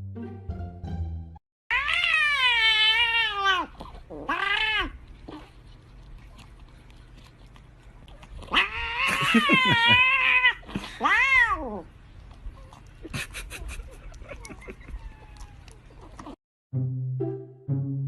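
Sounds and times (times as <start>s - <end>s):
cat yowling: 1.7s - 5.0s, 8.5s - 11.9s, 14.9s - 15.8s.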